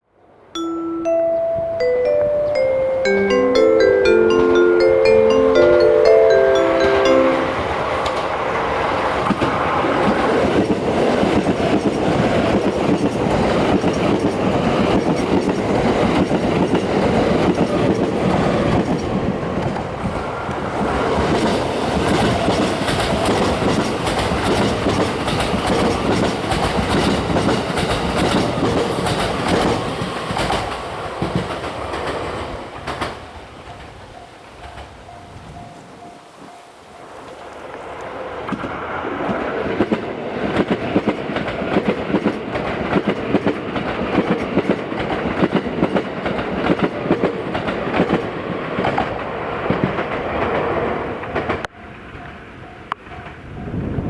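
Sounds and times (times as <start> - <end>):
mallet percussion chime: 0.6 - 8.2
train passing at speed: 0.6 - 54.0.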